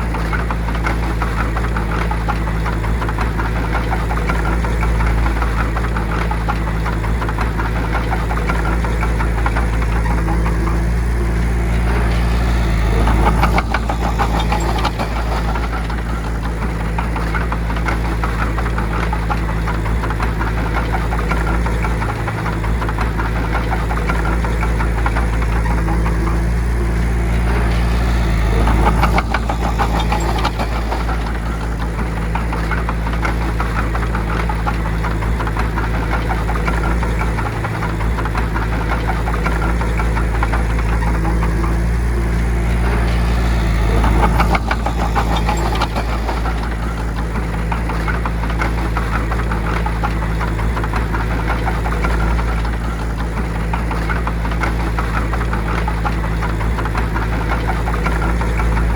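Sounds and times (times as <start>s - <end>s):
bulldozer diesel engine running: 0.0s - 58.9s.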